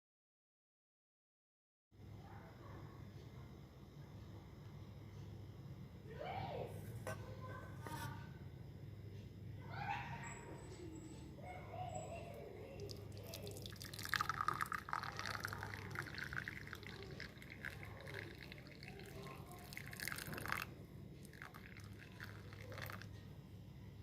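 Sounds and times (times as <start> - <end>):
liquid pouring into container: 12.7 - 23.2.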